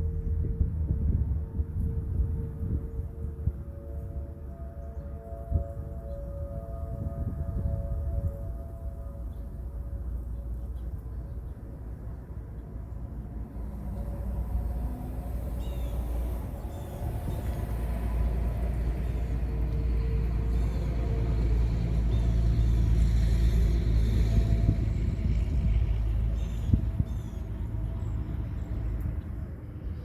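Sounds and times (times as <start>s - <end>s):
vehicle passing with low rumble: 0.0s - 30.0s.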